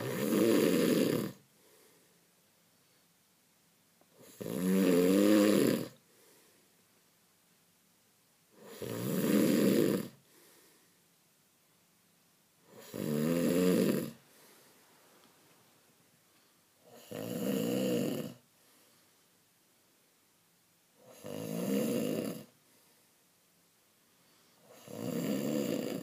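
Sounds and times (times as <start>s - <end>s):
person snoring: 0.0s - 1.4s, 4.2s - 6.0s, 8.6s - 10.2s, 12.7s - 14.2s, 16.8s - 18.4s, 21.0s - 22.6s, 24.6s - 26.0s
faint breathing: 1.4s - 3.2s, 6.0s - 6.9s, 10.2s - 11.2s, 14.2s - 15.6s, 16.2s - 16.9s, 18.5s - 19.4s, 22.5s - 23.3s, 24.0s - 24.8s.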